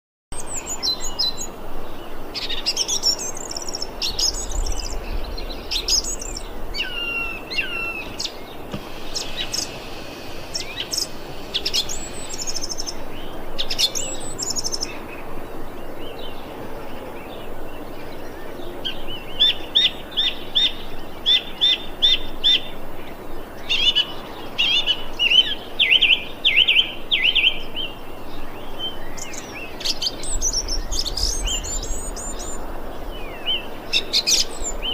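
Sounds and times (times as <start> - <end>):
thrush singing: 3.0 - 17.7.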